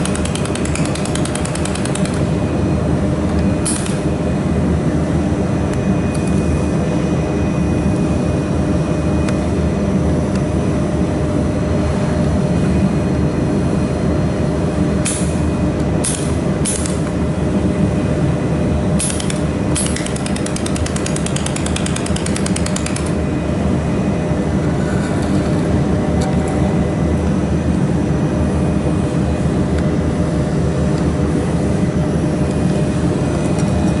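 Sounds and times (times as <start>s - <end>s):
welding machine humming: 0.0s - 6.9s, 14.5s - 34.0s.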